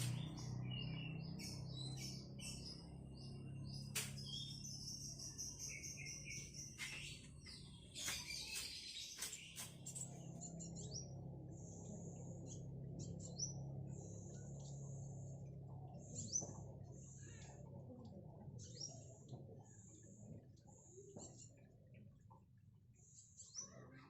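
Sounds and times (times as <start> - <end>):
bird singing and chirping: 0.0 - 22.3
faint low hum: 9.3 - 24.0.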